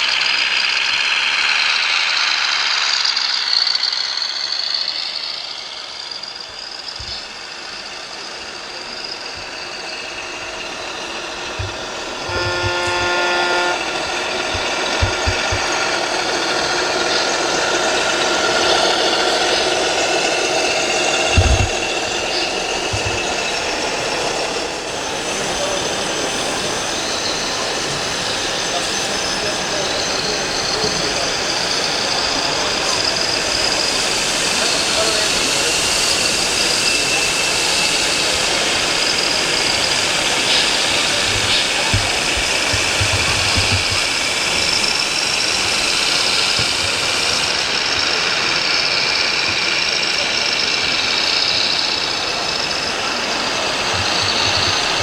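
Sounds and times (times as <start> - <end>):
model truck engine running: 0.0 - 55.0
background hiss: 6.5 - 15.8.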